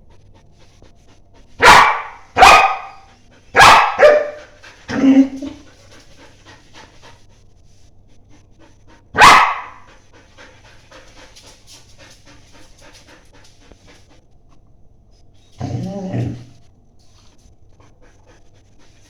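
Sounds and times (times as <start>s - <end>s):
puppy panting: 0.0s - 19.0s
puppy barking: 1.6s - 5.6s, 9.2s - 9.9s.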